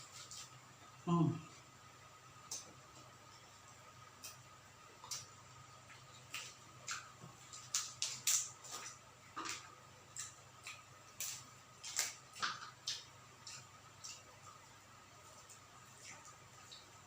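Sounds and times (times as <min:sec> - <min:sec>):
chewing crispy food crunches: 0:05.9 - 0:14.6.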